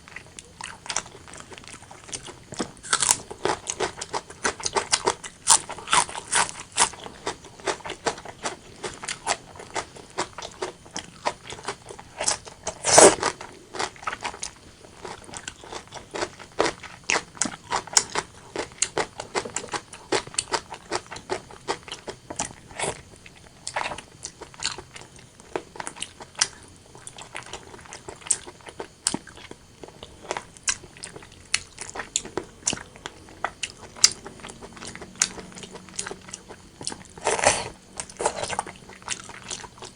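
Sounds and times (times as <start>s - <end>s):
wet chewing clicks and smacks: 23.4s - 39.9s.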